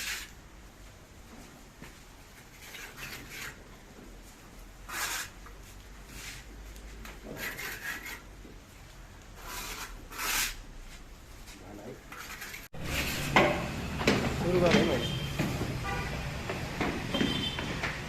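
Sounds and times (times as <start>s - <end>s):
hand scraping and rubbing: 2.3s - 8.6s, 9.4s - 13.5s.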